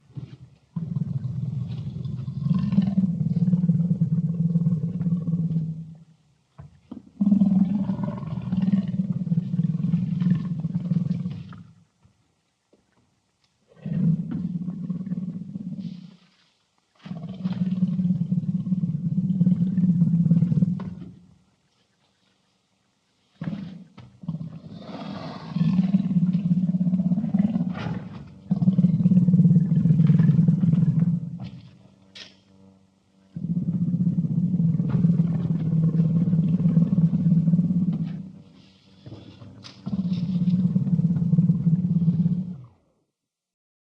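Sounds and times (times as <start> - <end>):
panther growling: 23.4 - 31.7, 33.3 - 42.8.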